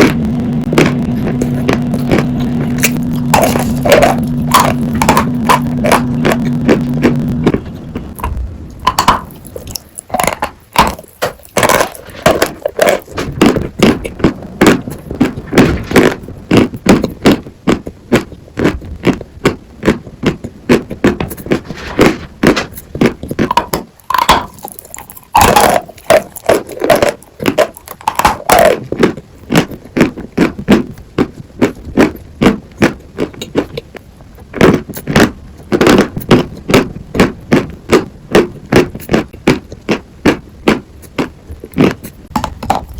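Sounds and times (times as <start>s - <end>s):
chalk crunching: 0.0s - 17.5s, 21.1s - 29.7s.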